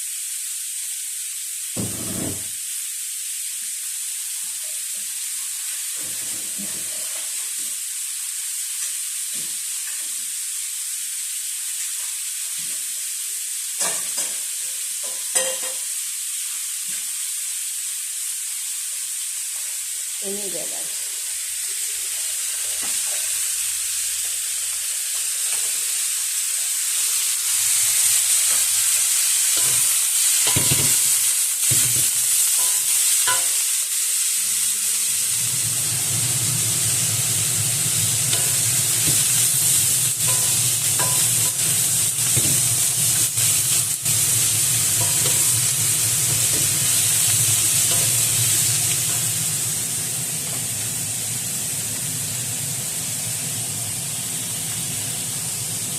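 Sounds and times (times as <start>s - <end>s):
pork sizzling in a pan: 0.0s - 55.9s
spatula scraping a pan: 38.3s - 48.4s.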